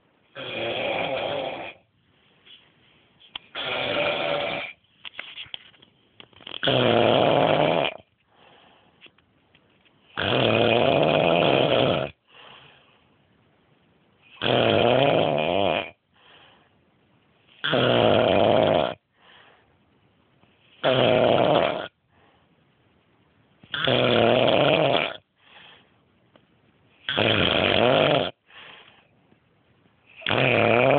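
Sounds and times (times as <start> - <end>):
man snoring: 0.4 - 1.8, 3.5 - 4.8, 6.6 - 8.1, 10.2 - 12.2, 14.4 - 16.0, 17.6 - 19.0, 20.8 - 22.0, 23.7 - 25.2, 27.1 - 28.4, 30.2 - 30.9.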